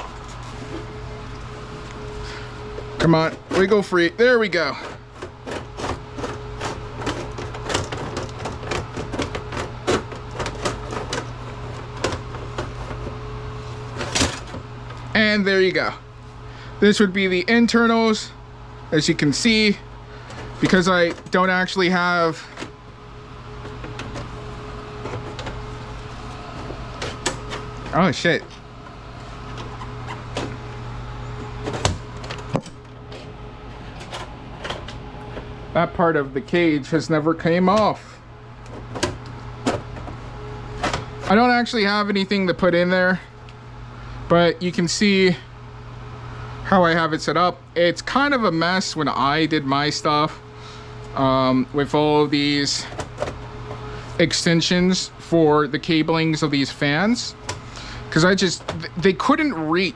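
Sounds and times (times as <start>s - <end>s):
steady low hum: 0.0s - 59.9s
knocks and clicks of handled parts: 4.8s - 11.4s.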